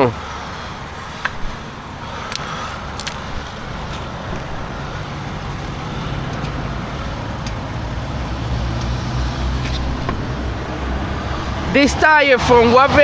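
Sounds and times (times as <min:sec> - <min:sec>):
highway traffic passing: 0:00.0 - 0:13.0.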